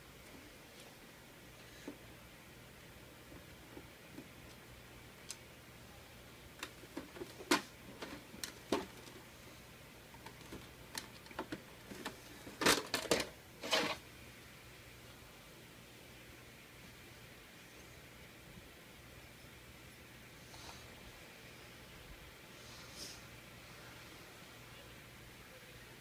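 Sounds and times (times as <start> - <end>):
parts clattering: 6.6 - 9.2, 10.2 - 14.0.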